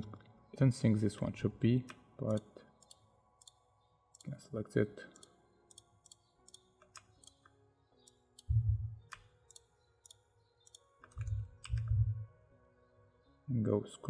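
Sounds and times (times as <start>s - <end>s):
faint background music: 0.0s - 14.0s
computer mouse clicks: 1.9s - 3.6s, 5.2s - 7.5s, 8.1s - 11.9s.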